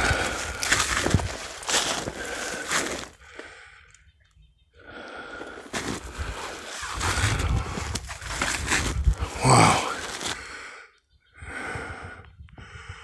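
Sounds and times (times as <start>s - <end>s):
snowshoe steps crunching in snow: 0.0s - 3.2s, 5.6s - 10.4s
heavy breathing: 0.0s - 4.0s, 4.8s - 13.0s.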